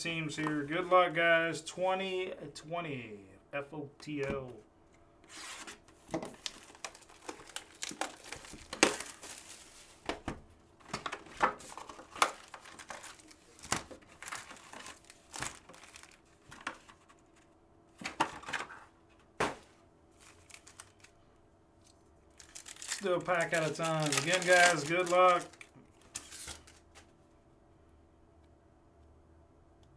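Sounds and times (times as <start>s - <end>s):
plastic packaging crinkling: 6.3s - 10.1s, 11.0s - 16.9s, 20.2s - 21.2s, 22.3s - 27.0s.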